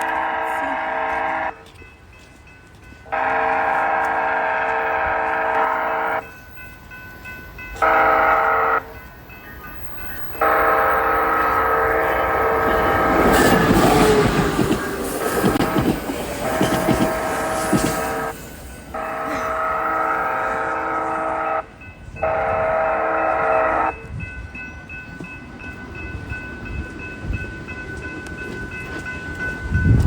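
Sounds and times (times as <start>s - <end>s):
train horn blasts: 0.0s - 1.7s, 3.0s - 6.3s, 7.8s - 9.0s, 10.3s - 24.3s
train rumble and wheel clatter: 0.0s - 30.0s.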